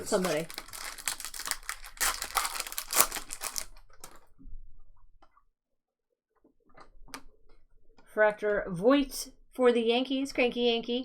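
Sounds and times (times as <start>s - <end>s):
trading cards being handled: 0.0s - 3.7s
foil wrapper crinkling: 0.0s - 4.2s.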